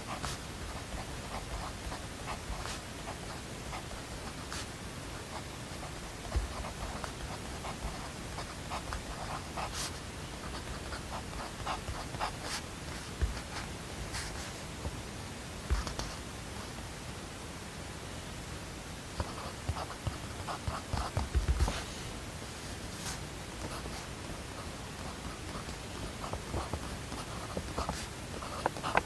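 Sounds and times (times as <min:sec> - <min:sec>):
steady hiss: 0:00.0 - 0:29.0
pen scratching on paper: 0:00.1 - 0:14.5, 0:19.2 - 0:22.0, 0:23.0 - 0:29.0.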